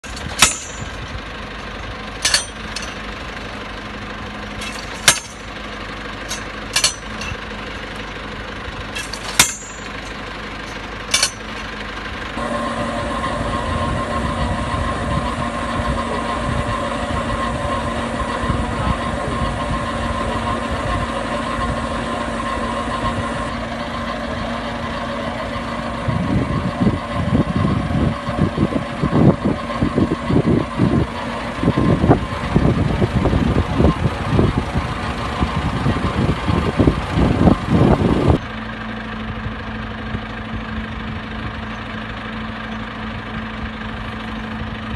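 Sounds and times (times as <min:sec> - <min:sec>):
sharp metallic clanks: 0:00.0 - 0:11.9
drilling rig engine running: 0:00.0 - 0:44.9.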